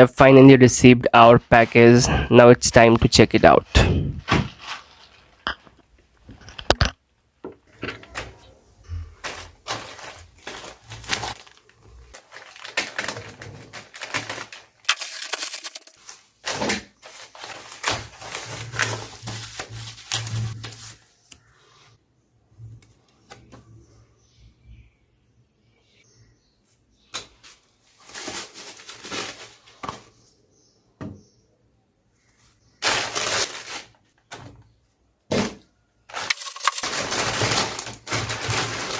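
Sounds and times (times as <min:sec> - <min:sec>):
packaging rustling and tearing: 0:04.2 - 0:05.4, 0:09.2 - 0:21.1, 0:27.9 - 0:29.8, 0:32.8 - 0:34.0, 0:36.1 - 0:38.9.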